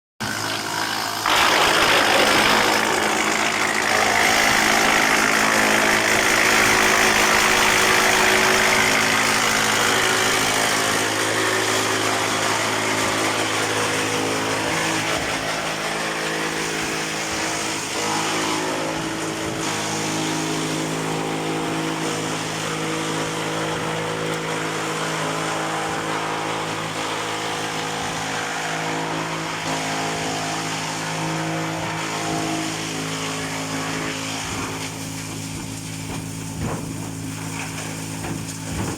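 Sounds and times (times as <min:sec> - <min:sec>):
wood chipper humming: 0:00.2 - 0:38.9
loud rushing noise: 0:01.2 - 0:31.2.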